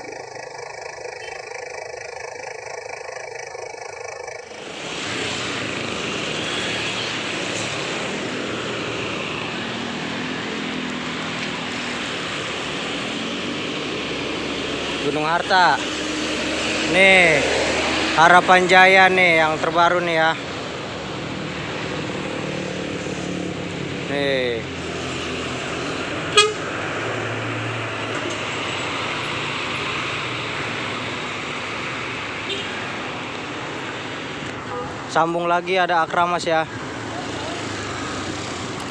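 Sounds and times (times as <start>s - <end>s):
bus engine running: 0.0s - 35.1s, 36.0s - 38.9s
heavy road traffic passing: 0.0s - 38.9s
short horn toot: 26.3s - 26.6s.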